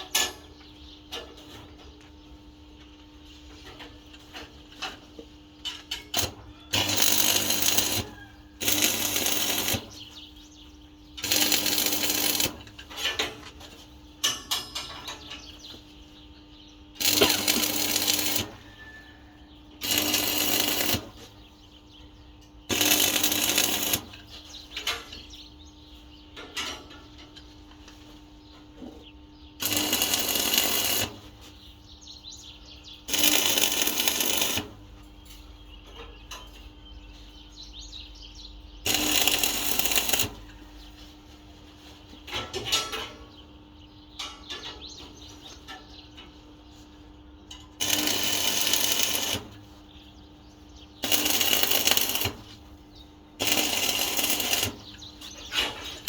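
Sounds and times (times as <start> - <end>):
electric arc welding: 6.1 - 10.1, 11.2 - 12.8, 17.0 - 18.9, 19.8 - 21.3, 22.7 - 24.3, 29.6 - 31.5, 33.0 - 34.8, 38.8 - 40.6, 47.8 - 49.7, 50.9 - 52.8, 53.4 - 55.0.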